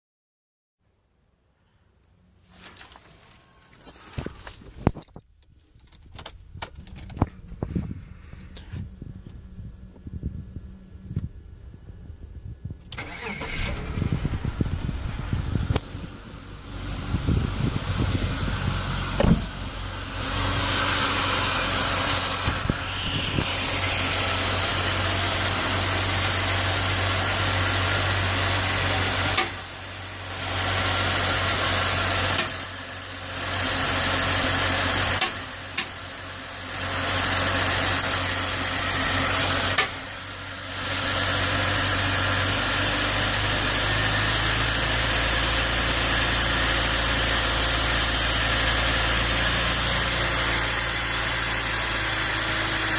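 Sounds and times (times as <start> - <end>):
car engine idling: 3.1 - 52.9
engine knocking and rumbling: 4.2 - 52.9
sharp click: 39.8 - 40.0.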